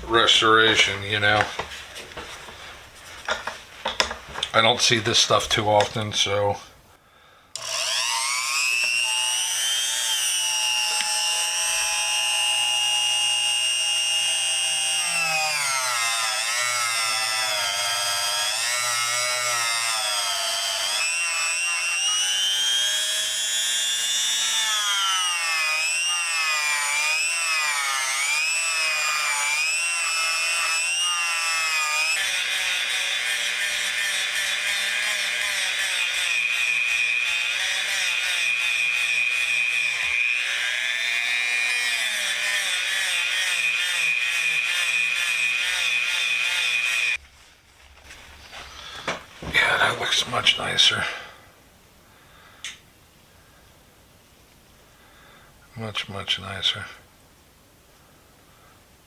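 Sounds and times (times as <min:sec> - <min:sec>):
power tool whining on metal: 0:07.5 - 0:47.2.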